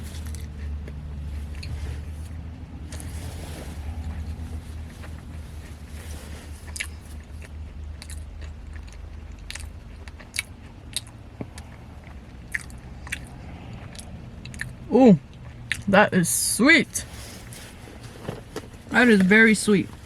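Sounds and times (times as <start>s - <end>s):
person chewing: 0.0s - 15.9s
steady low hum: 0.0s - 20.0s
wet mouth clicks: 12.5s - 14.8s.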